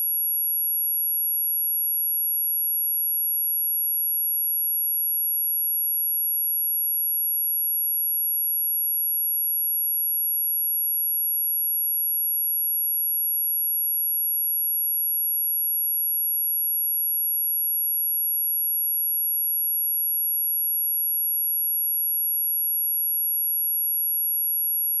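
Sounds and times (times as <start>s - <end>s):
high-pitched sine test tone: 21.4s - 25.0s.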